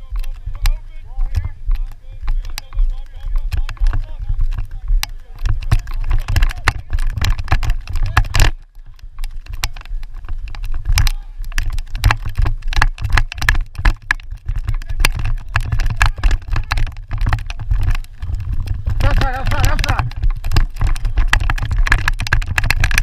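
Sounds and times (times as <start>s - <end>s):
quick irregular clicks and knocks: 0.0s - 23.0s
wind rumbling on microphone: 0.0s - 23.0s.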